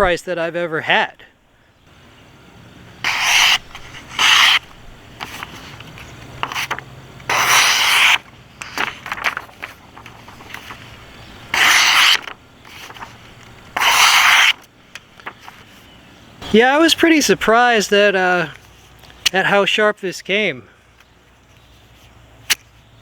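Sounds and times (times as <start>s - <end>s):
blade slicing scrape: 3.0s - 4.7s, 7.3s - 8.8s, 11.5s - 13.0s, 13.8s - 14.6s.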